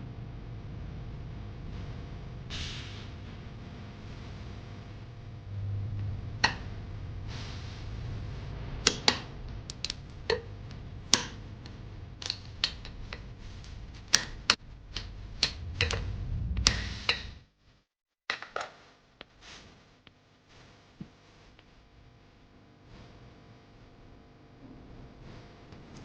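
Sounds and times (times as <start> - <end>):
low steady hum: 3.1 - 17.4.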